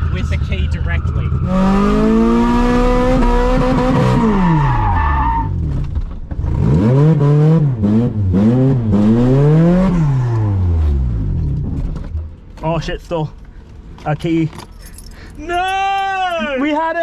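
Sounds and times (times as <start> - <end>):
car engine revving: 0.0 - 12.3.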